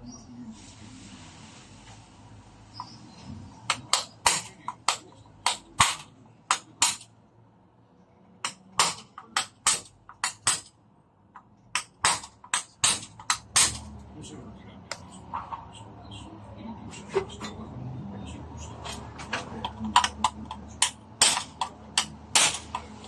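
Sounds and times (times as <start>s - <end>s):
sharp clicks and knocks: 3.6s - 7.1s, 8.4s - 14.0s, 18.8s - 23.0s.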